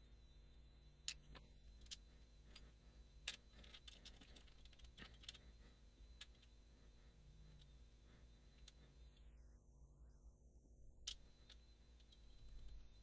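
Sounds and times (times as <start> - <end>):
low steady hum: 0.0 - 13.0
small metallic clicks and taps: 1.1 - 5.4, 6.2 - 6.5.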